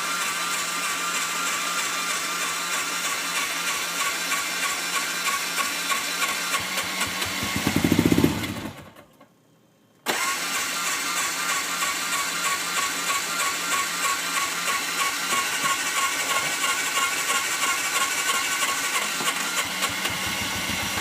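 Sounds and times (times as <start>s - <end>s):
engine firing and chugging: 0.1s - 9.0s, 10.1s - 21.0s
engine starter cranking: 10.1s - 21.0s.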